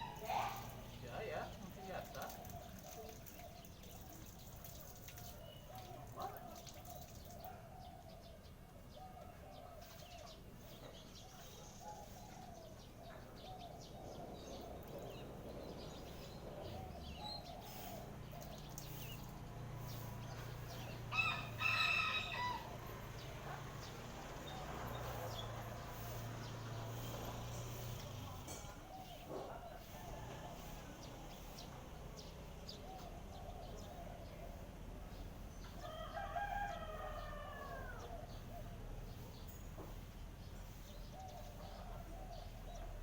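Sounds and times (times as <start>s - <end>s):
rooster crowing: 21.1s - 22.8s, 35.8s - 38.3s.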